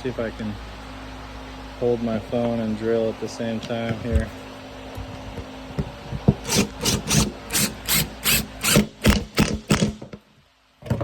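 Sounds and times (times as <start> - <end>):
power drill driving screws into wood: 6.4 - 10.1.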